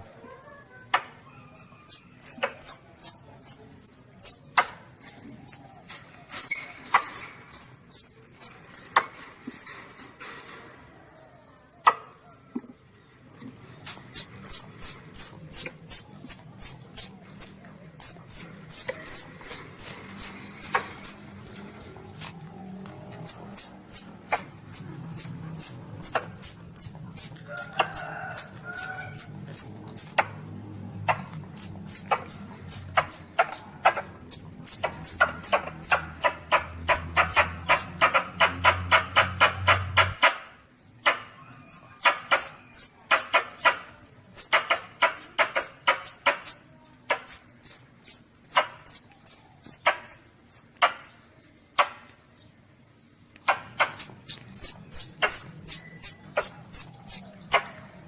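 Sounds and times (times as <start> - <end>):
civet kitten squeaking calls: 1.4 - 10.5, 13.8 - 22.4, 23.2 - 30.3, 31.1 - 38.2, 41.4 - 50.8, 53.8 - 57.7.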